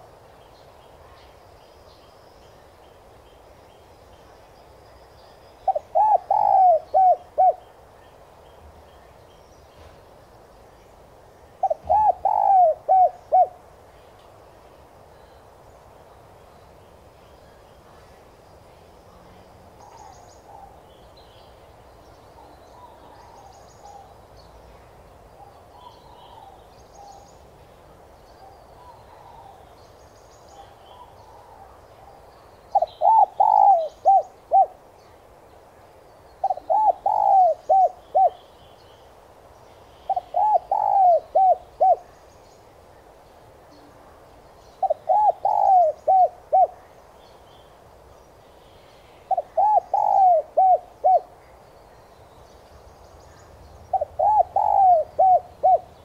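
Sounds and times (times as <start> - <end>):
small birds chirping: 0.0 - 56.0
doves cooing: 5.7 - 7.6, 11.6 - 13.6, 32.7 - 34.8, 36.4 - 38.4, 40.1 - 42.0, 44.8 - 46.8, 49.3 - 51.3, 53.9 - 56.0.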